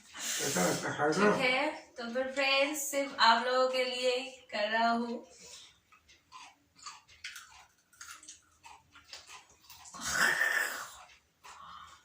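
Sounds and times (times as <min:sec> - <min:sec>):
breathy hiss of air: 0:00.1 - 0:00.9
chewing crunchy chili: 0:05.1 - 0:12.0.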